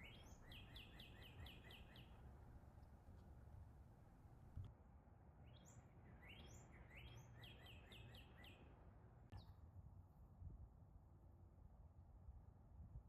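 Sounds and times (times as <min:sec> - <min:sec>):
songbird singing: 0:00.0 - 0:02.3, 0:05.5 - 0:08.7
faint low wind rumble: 0:00.0 - 0:07.4, 0:08.6 - 0:13.0.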